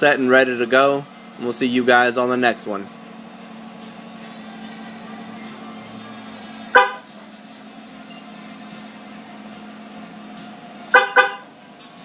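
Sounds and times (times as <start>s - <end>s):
truck horn chirp: 6.6s - 7.2s, 10.9s - 11.6s.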